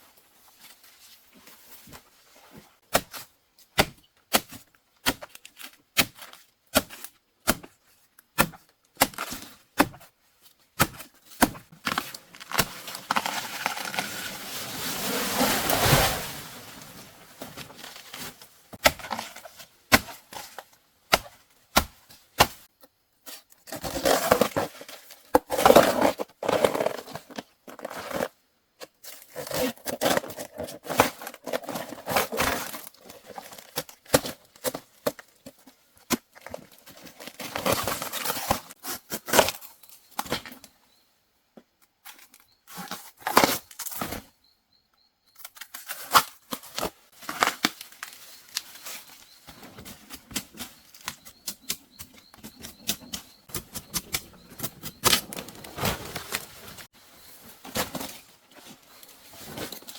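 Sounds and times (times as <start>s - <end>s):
plant material rustling and tearing: 11.8s - 19.5s.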